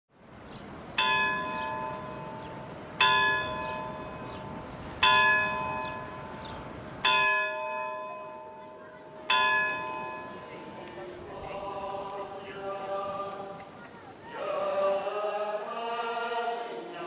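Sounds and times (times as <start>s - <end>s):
bell ringing: 1.0s - 10.9s.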